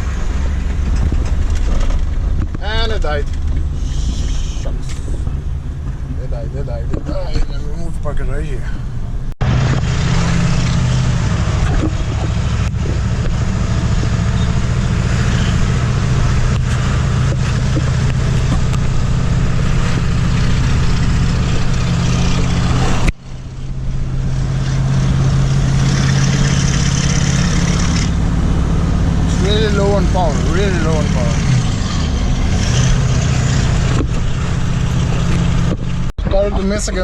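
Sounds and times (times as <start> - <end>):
diesel engine running: 0.0 - 37.0.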